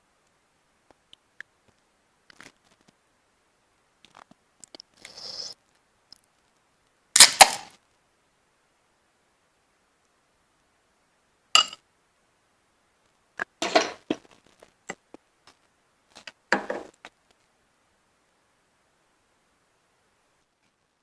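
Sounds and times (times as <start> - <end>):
shells and utensils clinking on plate: 11.6 - 11.8.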